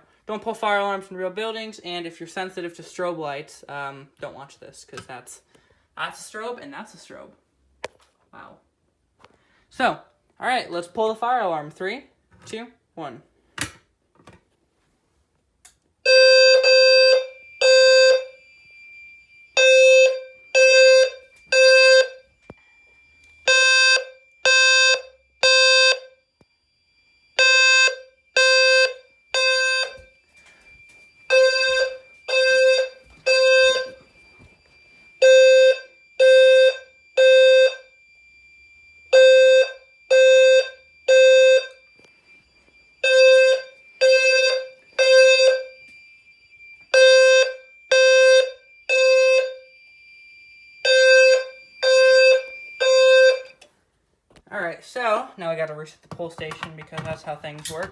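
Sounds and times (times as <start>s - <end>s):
buzzy fire alarm horn: 16.0s - 53.7s
faint steady high tone: 16.1s - 53.7s.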